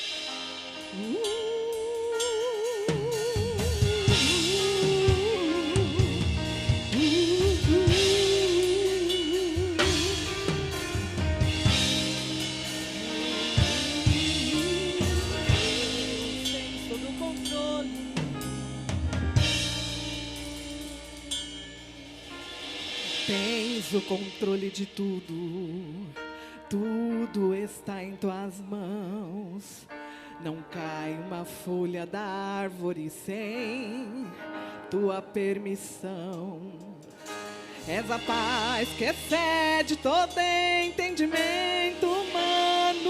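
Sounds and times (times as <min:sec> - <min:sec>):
lead melody with vibrato: 0:00.0 - 0:26.2
drum kit: 0:00.0 - 0:26.4, 0:36.9 - 0:43.0
bass notes: 0:02.9 - 0:25.6, 0:37.7 - 0:43.0.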